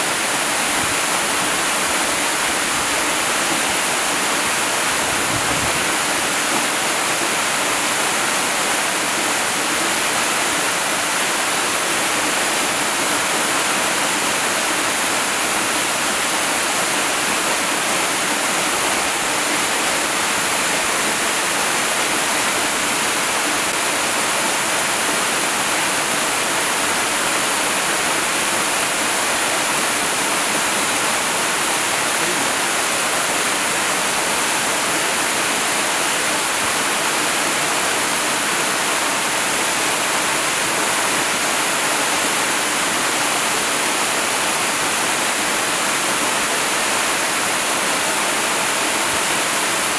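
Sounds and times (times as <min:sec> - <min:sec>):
waterfall rushing: 0:10.2 - 0:49.9.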